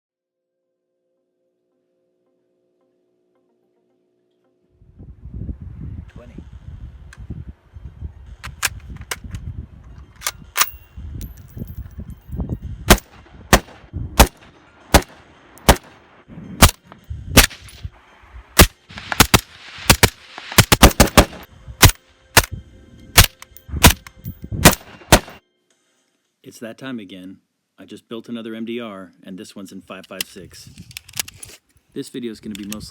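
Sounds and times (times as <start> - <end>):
rifle shots: 12.9 - 16.0, 16.6 - 17.8, 18.6 - 22.5, 23.2 - 24.0, 24.6 - 25.4.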